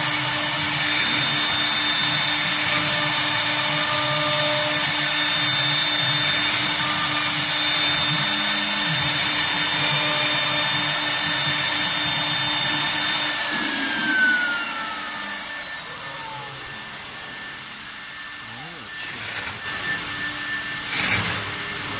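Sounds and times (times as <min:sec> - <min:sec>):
rushing mechanical noise: 0:00.0 - 0:21.9
spindle high whine: 0:11.4 - 0:21.7.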